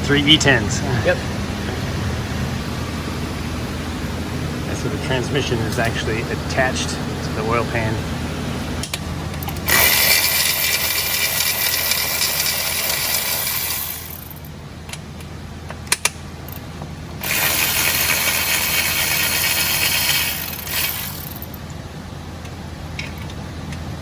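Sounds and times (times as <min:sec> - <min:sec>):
power ratchet spinning: 0:09.4 - 0:14.5, 0:17.2 - 0:21.6.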